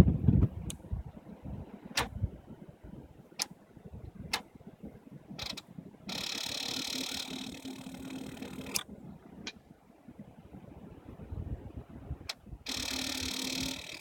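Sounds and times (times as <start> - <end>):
starter motor whirring: 5.4 - 8.9, 12.7 - 14.0.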